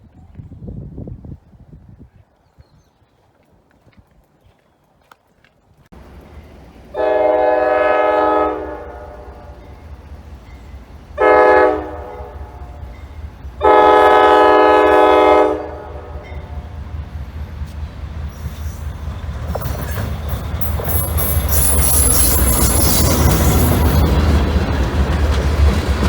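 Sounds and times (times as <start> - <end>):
rail and wheel noise: 3.2 - 26.0
train rumble: 6.0 - 26.0
locomotive air horn: 6.9 - 9.6, 11.2 - 12.8, 13.6 - 16.6.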